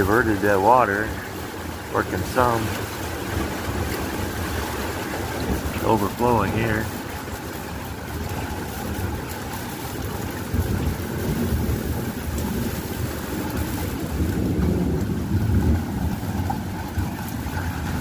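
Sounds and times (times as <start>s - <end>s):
heavy rain pouring: 0.0s - 18.0s
water overflowing and splashing: 0.0s - 18.0s
wind buffeting microphone: 0.0s - 18.0s.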